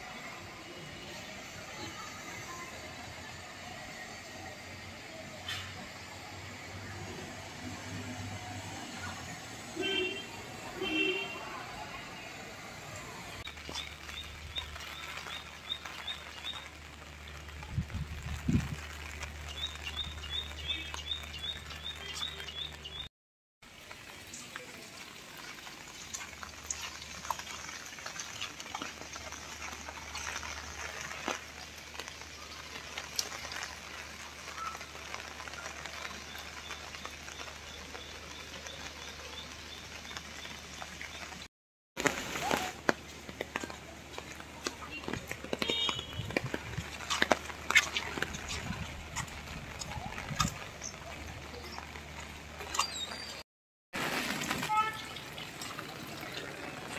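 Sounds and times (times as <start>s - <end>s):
rain falling: 0.0s - 56.9s
drips and taps: 25.4s - 32.3s.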